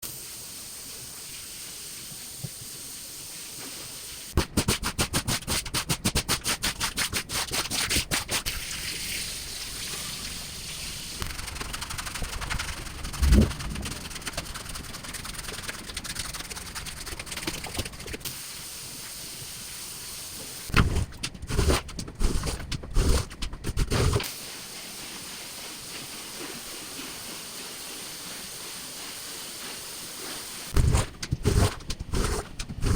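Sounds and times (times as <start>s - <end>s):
rug cleaner hissing: 0.0s - 4.4s, 18.3s - 20.7s, 24.2s - 32.9s.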